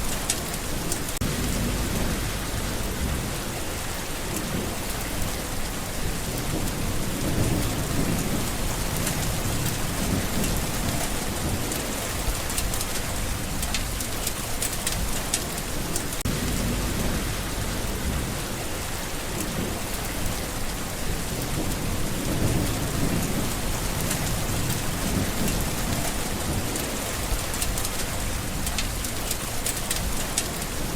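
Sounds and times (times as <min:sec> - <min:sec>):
rain pattering on leaves: 0:00.0 - 0:30.9
low rumbles: 0:01.2 - 0:03.6, 0:16.2 - 0:18.8.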